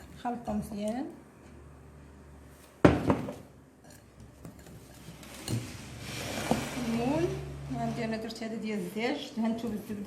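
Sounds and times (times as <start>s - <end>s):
batter stirring scraping: 3.9s - 10.0s.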